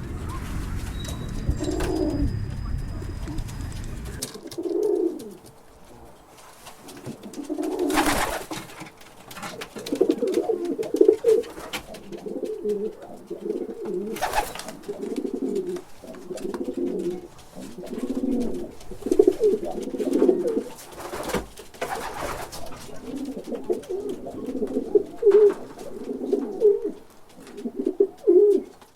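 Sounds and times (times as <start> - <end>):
short rushes of noise: 0.0 - 4.2
pigeon cooing: 0.0 - 5.5, 9.8 - 20.9, 22.0 - 28.8.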